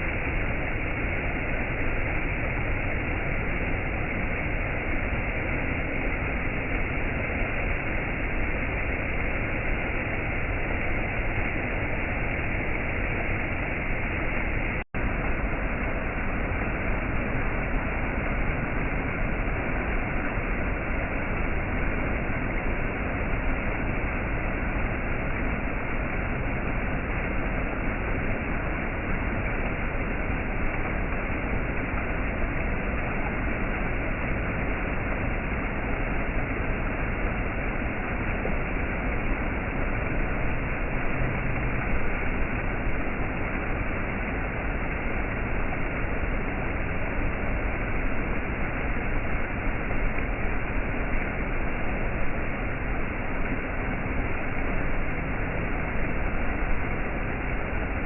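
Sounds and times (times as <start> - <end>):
waterfall rushing: 11.8 - 58.0.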